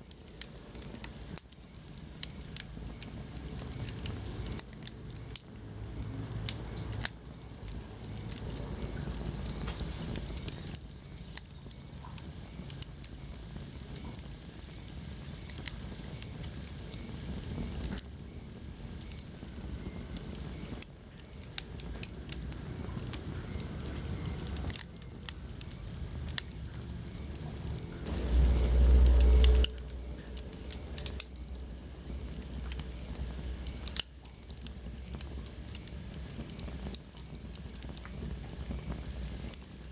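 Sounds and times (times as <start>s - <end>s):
low steady rumble: 0.0s - 39.9s
wood fire crackling and popping: 0.0s - 39.9s
loud low rumble: 28.0s - 32.3s.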